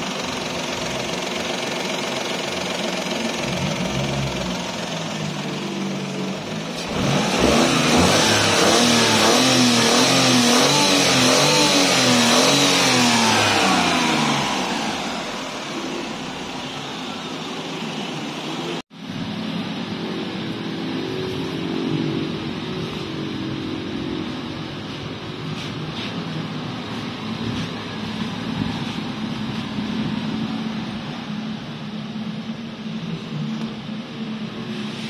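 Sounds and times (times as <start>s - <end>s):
car engine revving: 0.0s - 18.8s.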